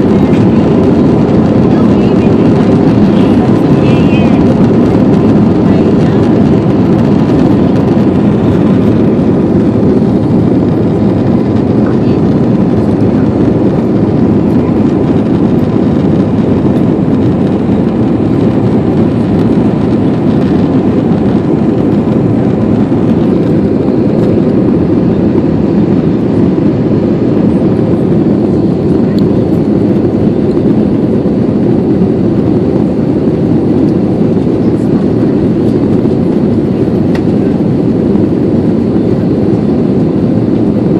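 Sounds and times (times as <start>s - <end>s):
airplane engines rumbling: 0.0s - 40.9s
faint steady whine: 0.0s - 40.9s.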